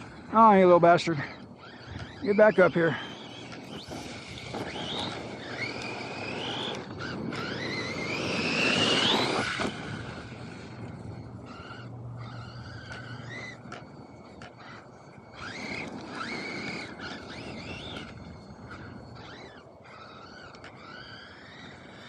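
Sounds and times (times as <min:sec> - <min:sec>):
electric rc car motor whining: 0:00.0 - 0:22.0.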